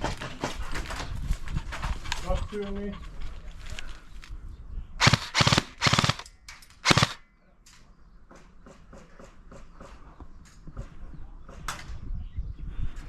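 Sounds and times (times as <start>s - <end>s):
airsoft gun full-auto bursts: 5.0s - 7.2s.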